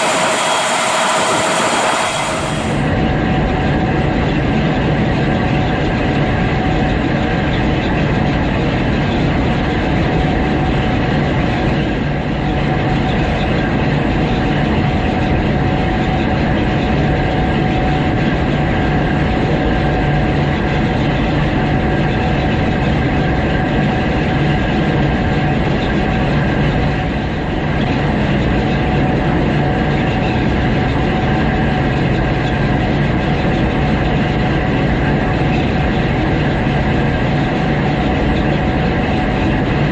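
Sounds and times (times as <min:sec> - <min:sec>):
combine harvester droning: 0:00.0 - 0:03.2
constant mechanical whine: 0:00.0 - 0:39.9.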